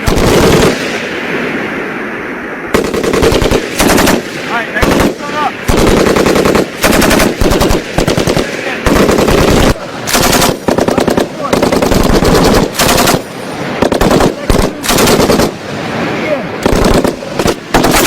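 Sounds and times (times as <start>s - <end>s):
machine guns firing bursts: 0.0s - 0.8s, 2.7s - 15.6s, 16.6s - 18.0s.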